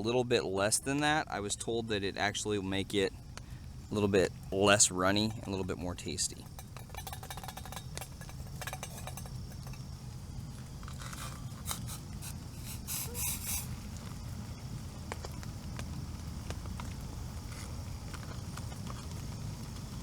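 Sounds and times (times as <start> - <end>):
low background noise: 0.0 - 20.0
foil pouch crinkling: 10.5 - 14.2.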